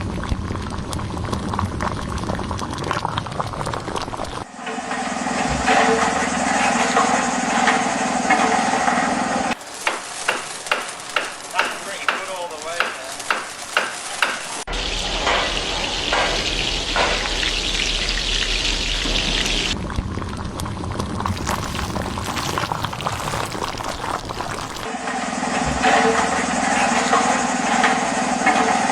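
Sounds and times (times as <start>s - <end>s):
food frying with a sizzle: 9.6s - 19.8s, 21.2s - 24.9s.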